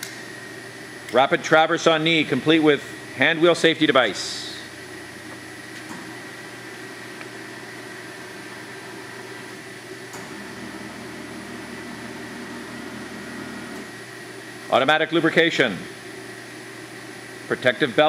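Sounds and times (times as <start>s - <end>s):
lower drive hum: 0.0s - 18.0s
milling machine humming and whining: 0.0s - 18.0s.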